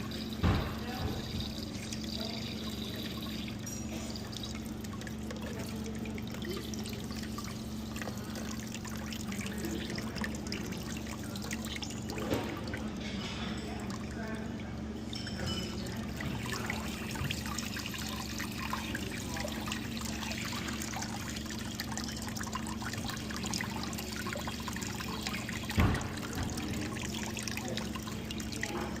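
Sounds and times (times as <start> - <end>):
water trickling and splashing: 0.0 - 29.0
thump: 0.4 - 1.4, 25.7 - 26.6.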